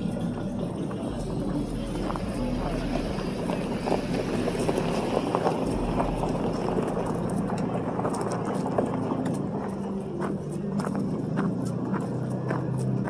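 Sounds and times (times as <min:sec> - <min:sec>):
faint voices: 0:00.0 - 0:13.0
vehicle engines humming: 0:00.0 - 0:13.0.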